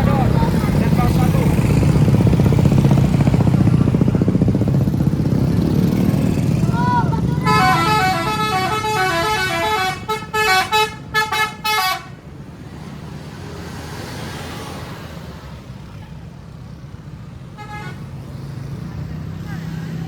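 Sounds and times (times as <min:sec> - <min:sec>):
low vehicle rumble: 0:00.0 - 0:14.3
multi-tone bus horn melody: 0:07.2 - 0:12.3, 0:17.6 - 0:18.1.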